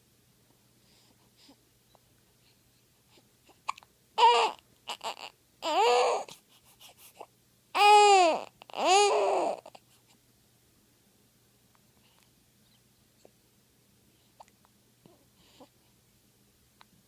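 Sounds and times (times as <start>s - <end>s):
baby whimpering cries: 3.7s - 6.4s, 7.8s - 9.8s.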